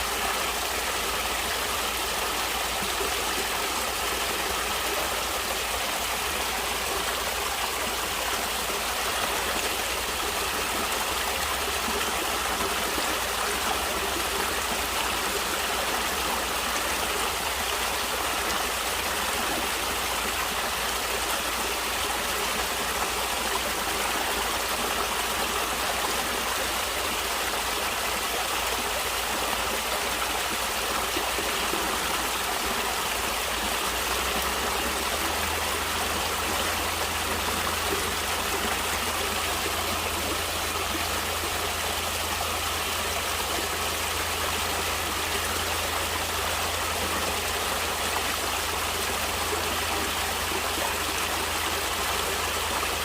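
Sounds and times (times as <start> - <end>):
water flowing: 0.0 - 53.0.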